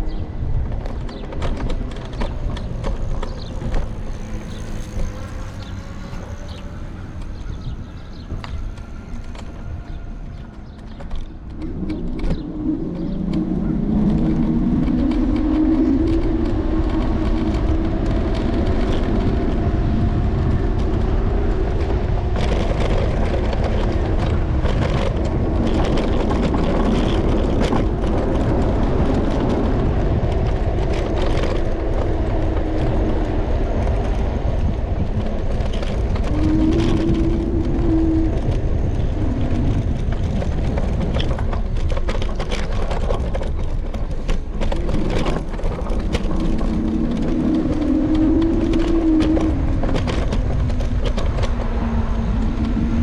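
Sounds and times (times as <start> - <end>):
scooter rumble: 0.0 - 53.0
wind noise: 0.0 - 53.0
electric motor whine: 2.6 - 11.1.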